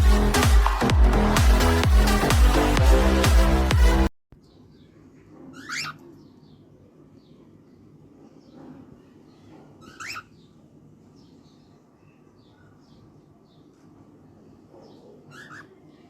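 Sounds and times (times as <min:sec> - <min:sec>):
faint bird chirps: 0:04.4 - 0:16.0.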